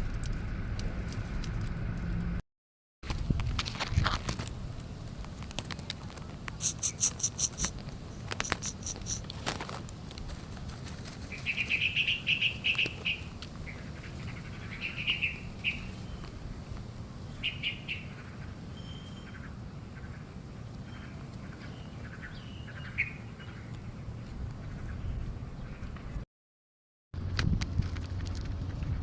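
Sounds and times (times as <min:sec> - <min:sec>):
birds chirping in trilled bursts: 0:06.6 - 0:09.3, 0:11.3 - 0:24.0.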